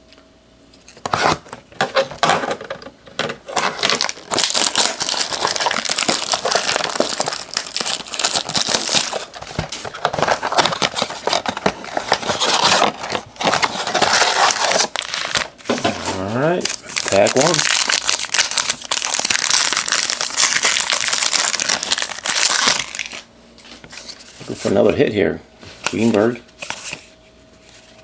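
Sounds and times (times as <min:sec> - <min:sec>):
plastic wrapping crinkling: 0:03.5 - 0:15.6, 0:16.2 - 0:23.2.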